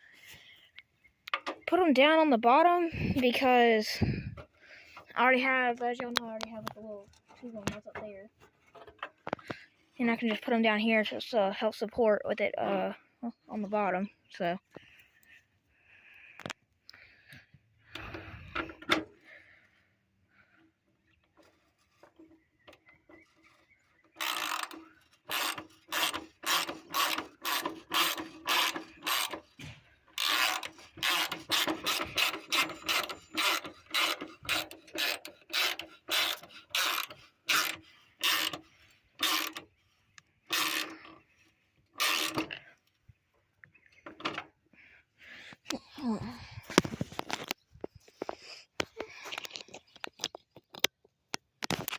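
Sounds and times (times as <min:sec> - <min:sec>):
ratchet wrench clicking: 0:24.2 - 0:29.4, 0:30.2 - 0:38.6, 0:39.2 - 0:39.6, 0:40.5 - 0:41.1, 0:42.0 - 0:42.5.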